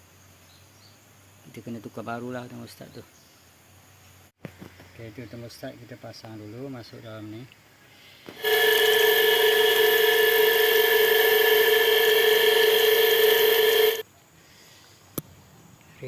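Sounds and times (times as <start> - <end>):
power tool whining: 8.3 - 14.0.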